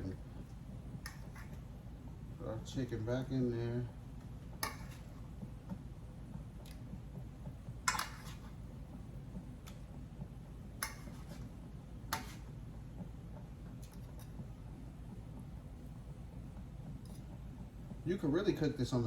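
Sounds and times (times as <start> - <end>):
low steady hum: 0.0 - 19.0
utensil clinking against a pan: 7.9 - 8.4.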